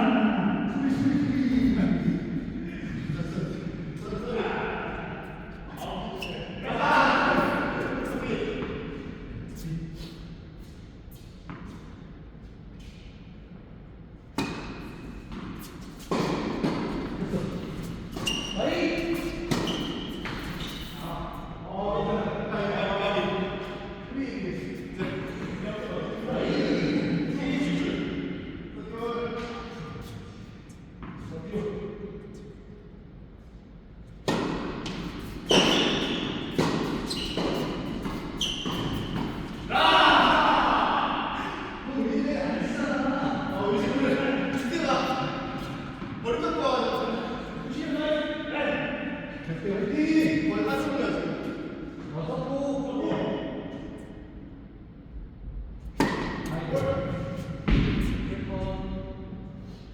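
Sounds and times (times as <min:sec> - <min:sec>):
tennis ball hit by rackets: 0:34.3 - 0:39.6, 0:56.0 - 0:56.5.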